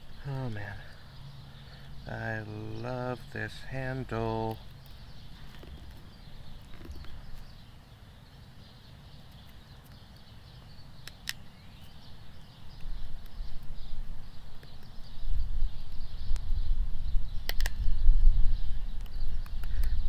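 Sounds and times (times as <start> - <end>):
faint chirping: 0.0 - 20.0
sharp clicks: 11.0 - 11.4, 17.4 - 17.8.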